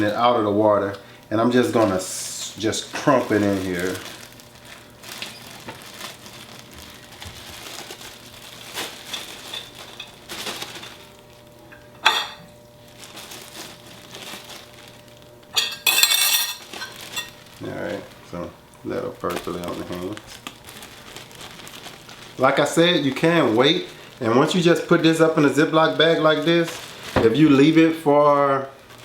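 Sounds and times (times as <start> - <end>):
soft plastic rustling: 0.0 - 11.9, 12.7 - 29.0
berries put into plastic bag: 1.5 - 12.0, 12.6 - 29.0
kitchenware clinking: 11.7 - 12.5, 15.5 - 17.4.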